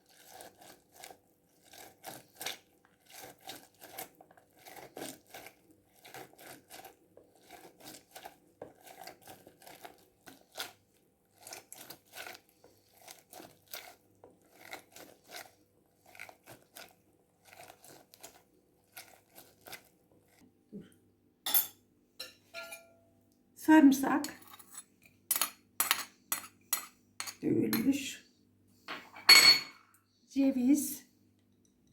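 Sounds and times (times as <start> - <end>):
food being crunched and scraped: 0.0 - 20.4.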